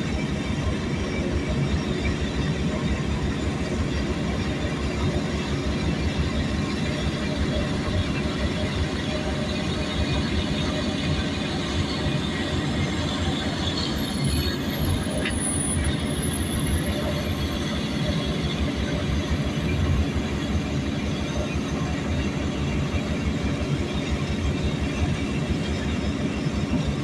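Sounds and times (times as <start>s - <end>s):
heavy machine diesel engines rumbling: 0.0s - 27.0s.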